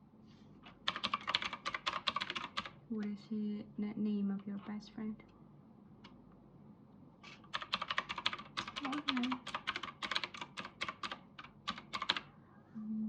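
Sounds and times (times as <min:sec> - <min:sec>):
typing on computer keyboard: 0:00.8 - 0:02.8, 0:07.2 - 0:12.3.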